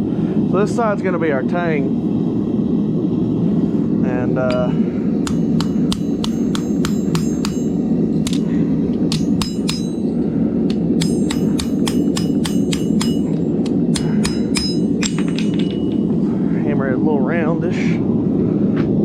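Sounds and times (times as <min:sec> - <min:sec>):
gas forge burner roaring: 0:00.0 - 0:19.0
hammer clanging on anvil: 0:04.5 - 0:16.2.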